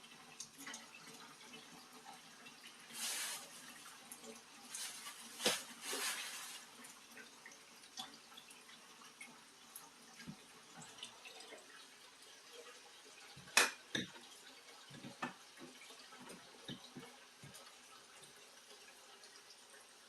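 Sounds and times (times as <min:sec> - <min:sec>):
water splashing and dripping: 0:00.0 - 0:20.0
dishes clinking: 0:13.6 - 0:14.2.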